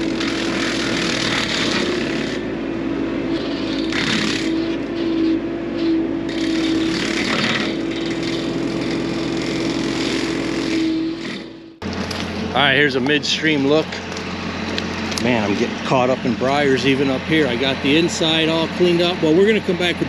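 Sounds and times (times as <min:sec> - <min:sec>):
motor whining: 0:00.0 - 0:20.0.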